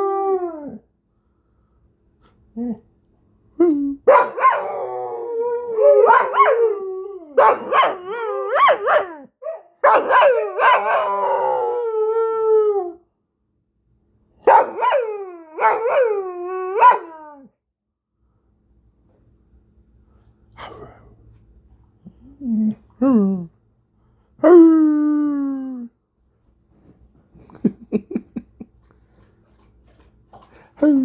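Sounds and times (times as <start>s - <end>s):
dog howling: 4.1s - 13.0s, 14.5s - 17.5s.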